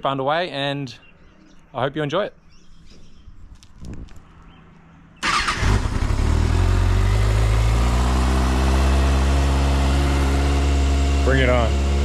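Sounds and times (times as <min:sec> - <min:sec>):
motorcycle engine running: 0:05.2 - 0:12.0.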